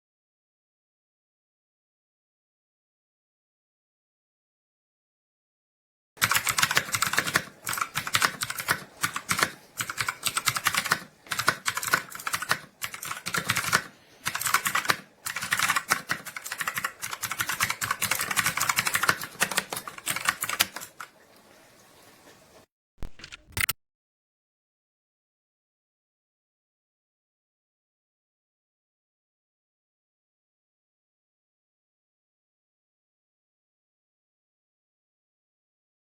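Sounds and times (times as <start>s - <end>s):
mechanical keyboard clicking: 6.2s - 21.1s.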